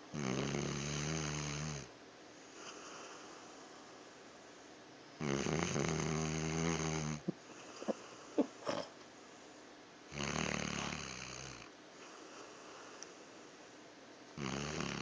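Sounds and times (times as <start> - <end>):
dog snoring: 0.1 - 1.9, 5.2 - 9.0, 10.1 - 13.0, 14.4 - 15.0
dog snorting: 5.2 - 9.0, 10.2 - 11.4.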